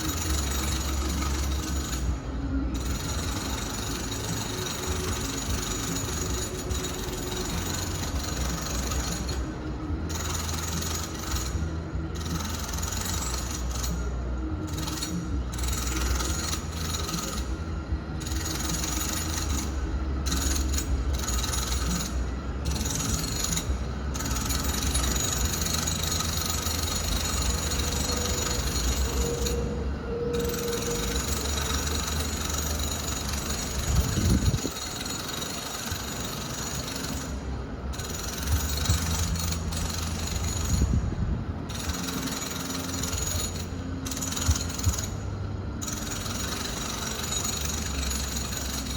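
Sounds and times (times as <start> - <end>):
mechanical rattling grind: 0.0 - 48.9
distant machinery rumbling: 14.0 - 34.9.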